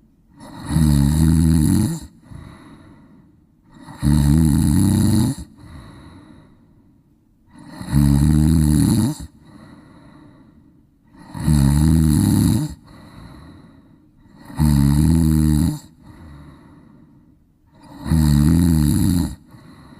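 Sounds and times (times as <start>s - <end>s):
cat snoring: 0.3s - 2.9s, 3.7s - 6.4s, 7.5s - 10.4s, 11.1s - 16.8s, 17.7s - 19.9s
quiet breath: 2.0s - 4.1s, 5.4s - 7.9s, 9.1s - 11.5s, 12.6s - 14.6s, 15.7s - 18.2s, 19.3s - 19.9s.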